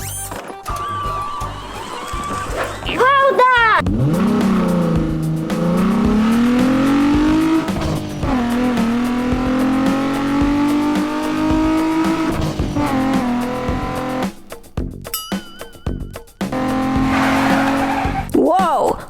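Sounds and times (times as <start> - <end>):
background music: 0.0 - 19.0
car engine revving: 3.8 - 14.8, 16.4 - 18.3.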